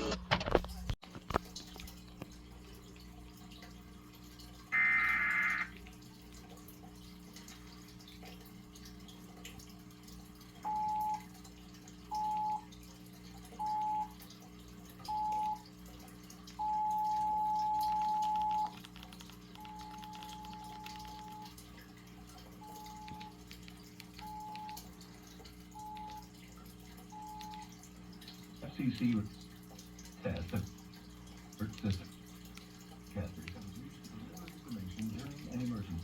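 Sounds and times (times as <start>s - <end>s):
low steady hum: 0.0s - 36.0s
electronic alert tone: 4.7s - 5.7s
warbling data burst: 4.7s - 5.7s
short electronic beeps: 4.8s - 5.7s.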